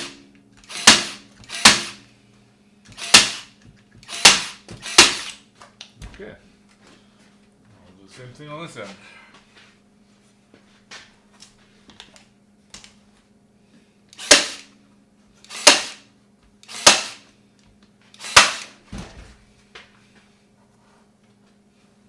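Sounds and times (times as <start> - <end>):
staple gun firing: 0.0 - 2.0, 4.0 - 5.4, 14.2 - 14.7, 15.6 - 16.0, 16.8 - 17.2, 18.3 - 18.8.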